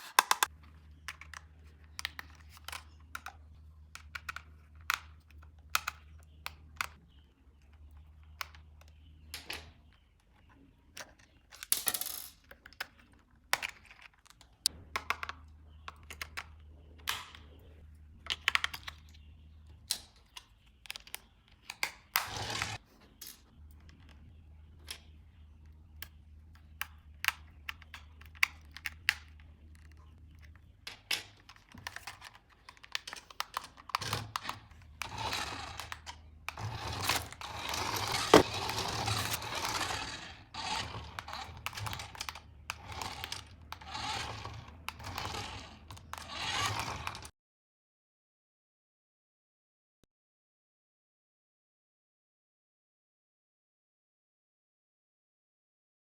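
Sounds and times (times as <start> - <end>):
plastic toy parts clicking: 0.0 - 7.0, 7.6 - 17.6, 18.2 - 22.4, 24.8 - 47.3.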